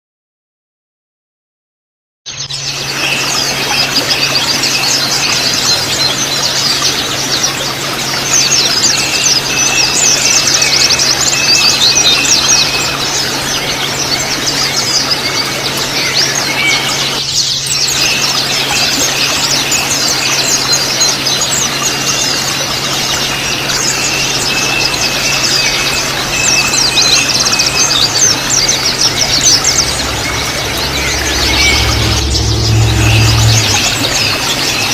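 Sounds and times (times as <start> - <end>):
birds chattering in high twitters: 2.3 - 34.9
steady low hum: 17.8 - 34.9.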